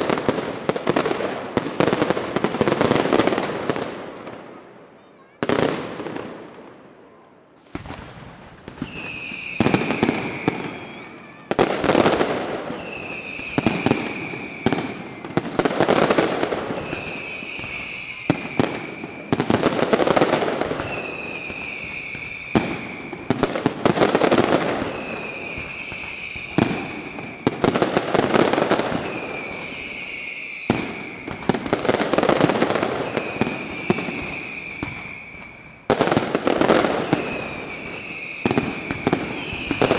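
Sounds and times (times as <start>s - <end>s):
firework bangs with crackle: 0.0s - 4.6s, 5.3s - 6.8s, 7.6s - 39.9s
firework whistle falling in pitch: 8.8s - 15.4s, 16.7s - 19.6s, 20.7s - 23.5s, 28.4s - 31.6s, 33.0s - 35.8s, 37.0s - 39.9s.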